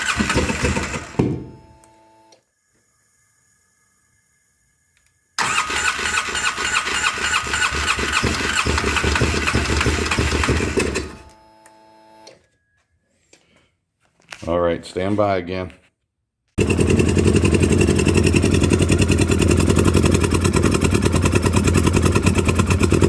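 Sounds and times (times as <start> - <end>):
engine running roughly: 0.0 - 1.2, 5.4 - 11.2, 16.6 - 23.0.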